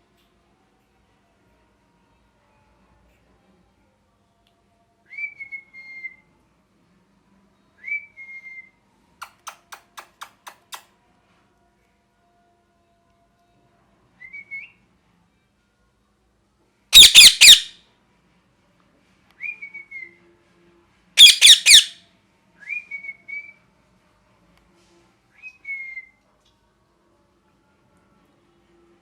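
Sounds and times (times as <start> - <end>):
parrot harsh screeches: 17.0 - 17.7, 21.2 - 22.0
parrot whistled notes: 17.0 - 17.7, 21.2 - 22.0.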